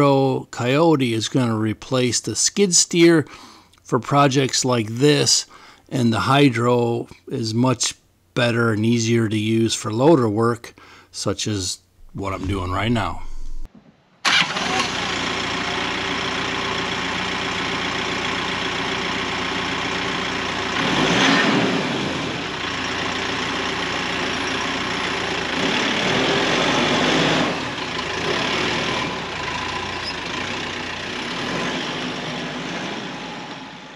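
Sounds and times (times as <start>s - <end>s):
tractor diesel engine running: 14.3s - 20.8s, 22.0s - 33.9s.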